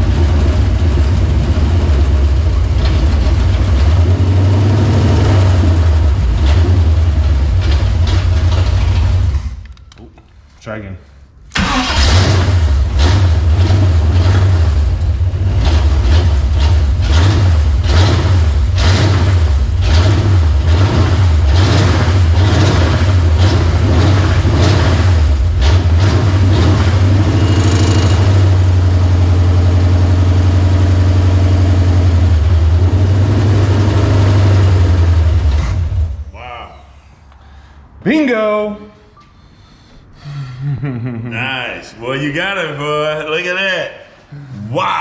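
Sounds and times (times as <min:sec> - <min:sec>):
car engine running unevenly: 0:00.0 - 0:09.4.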